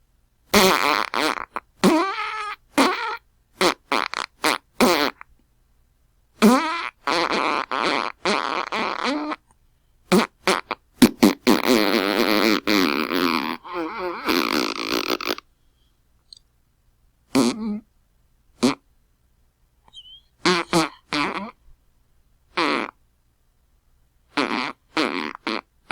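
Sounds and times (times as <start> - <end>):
fart sounds: 0.5 - 5.3, 6.4 - 9.4, 10.1 - 15.4, 17.3 - 17.8, 18.6 - 18.8, 20.4 - 21.6, 22.6 - 23.0, 24.3 - 25.9.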